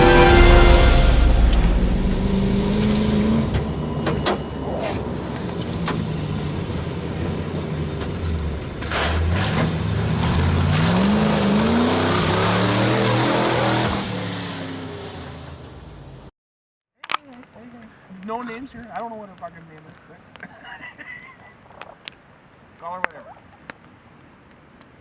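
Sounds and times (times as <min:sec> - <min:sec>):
vehicle engine revving: 0:00.0 - 0:16.3.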